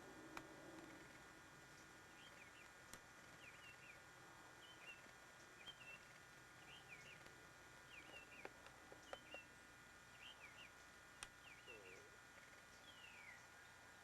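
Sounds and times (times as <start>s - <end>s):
faint sharp clicks: 2.6s - 3.4s, 8.0s - 9.4s, 11.2s - 11.4s
songbird whistling: 10.2s - 10.7s, 12.8s - 13.7s.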